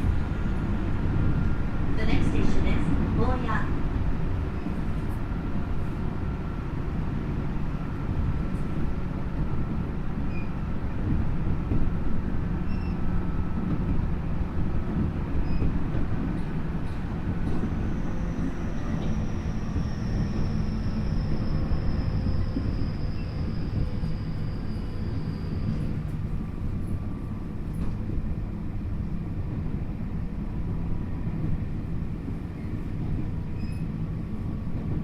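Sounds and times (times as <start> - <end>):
train wheels rumbling on rails: 0.0 - 35.0.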